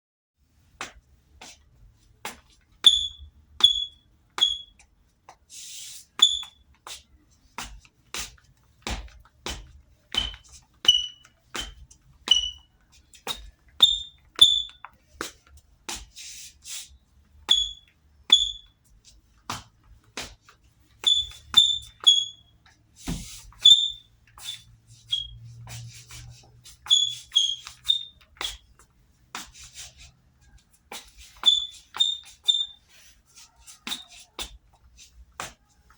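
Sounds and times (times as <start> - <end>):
sneakers squeaking on hard floor: 2.3 - 4.9, 6.1 - 15.4, 17.4 - 35.9
footsteps: 23.0 - 23.7.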